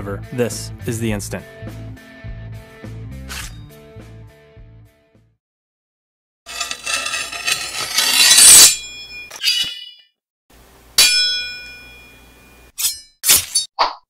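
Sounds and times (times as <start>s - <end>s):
metallic strike ringing: 11.0s - 12.3s.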